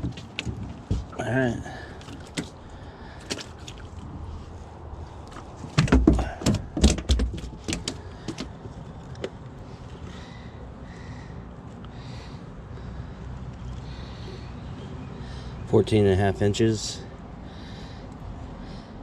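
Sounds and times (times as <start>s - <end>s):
heavy thumps and rattles: 0.0s - 1.2s, 5.7s - 8.6s
clicks and knocks in a boat: 0.0s - 4.4s, 5.1s - 12.0s.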